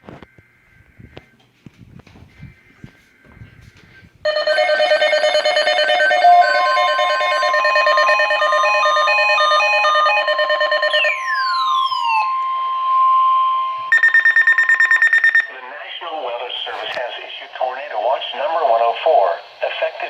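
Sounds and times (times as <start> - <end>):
steady warning tone: 4.2 - 16.7
beeping alert tones: 4.3 - 15.5
falling sweep tones: 6.4 - 14.0.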